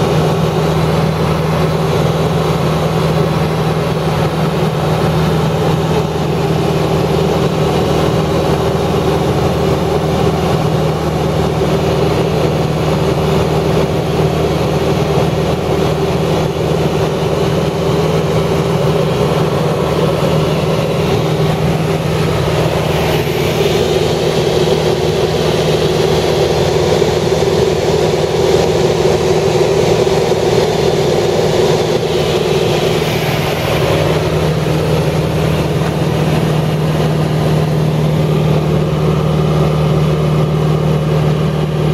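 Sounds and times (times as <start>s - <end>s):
engine humming: 0.0s - 41.9s.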